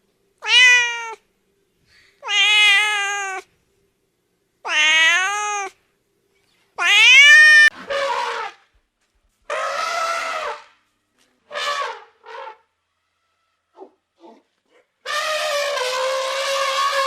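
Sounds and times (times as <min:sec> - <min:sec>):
cat meowing: 0:00.4 - 0:01.2, 0:02.2 - 0:03.5, 0:04.6 - 0:05.8, 0:06.8 - 0:07.8.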